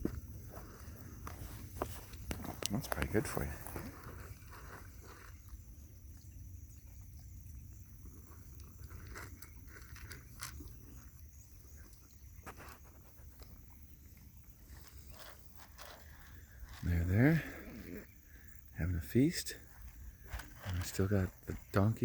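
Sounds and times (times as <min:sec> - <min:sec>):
animals chewing and crunching feed: 0:00.0 - 0:22.0.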